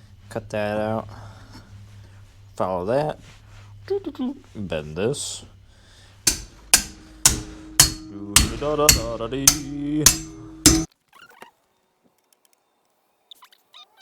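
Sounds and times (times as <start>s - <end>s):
hammer ringing on steel bar: 6.3s - 10.9s.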